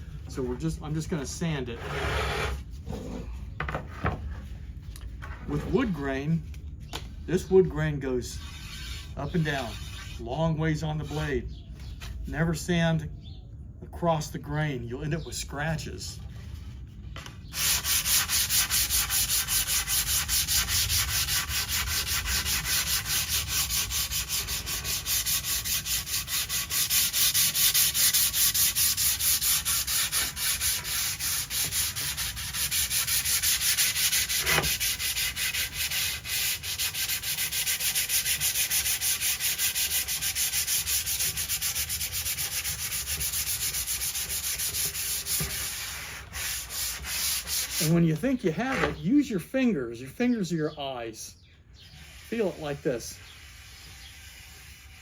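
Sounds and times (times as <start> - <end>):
hand sanding wood: 0.6 - 2.6, 8.3 - 10.2, 17.5 - 49.0, 51.9 - 55.0.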